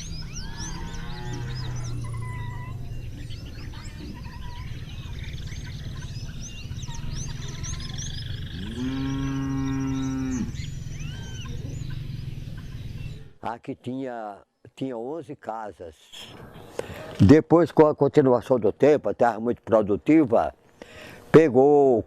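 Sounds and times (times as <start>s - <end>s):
birds chirping: 0.0s - 22.0s
cattle mooing: 0.4s - 2.8s, 8.5s - 11.4s.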